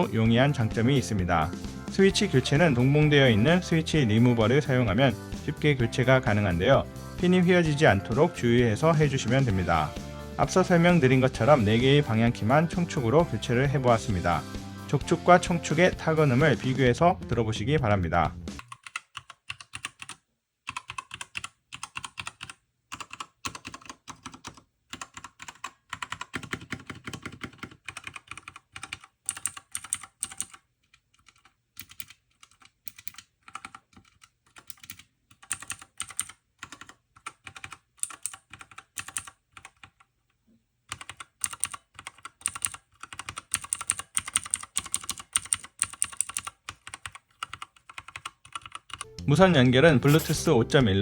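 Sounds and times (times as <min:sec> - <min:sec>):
typing on mechanical keyboard: 0:18.6 - 0:40.1, 0:40.9 - 0:49.1.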